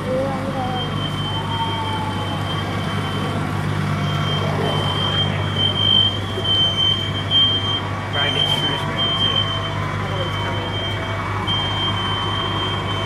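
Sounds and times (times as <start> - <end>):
vehicle engine idling: 0.0 - 13.0
smoke detector beeping: 4.0 - 13.0.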